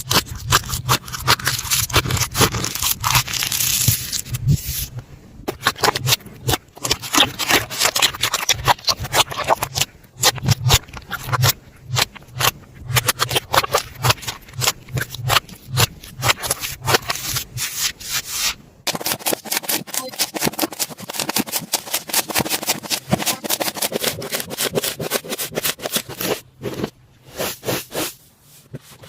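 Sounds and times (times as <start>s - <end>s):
slime squishing with sticky pops: 5.5s - 17.5s.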